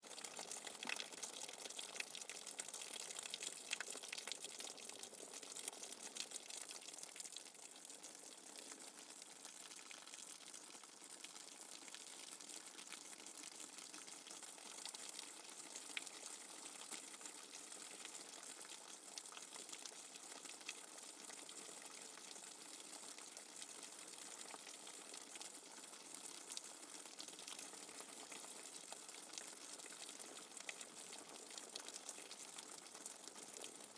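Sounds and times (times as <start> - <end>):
rainwater dripping: 0.2 - 5.0.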